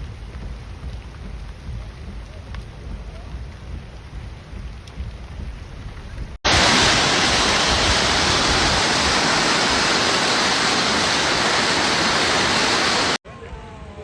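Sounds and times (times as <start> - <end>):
rush of floodwater: 6.5 - 13.2.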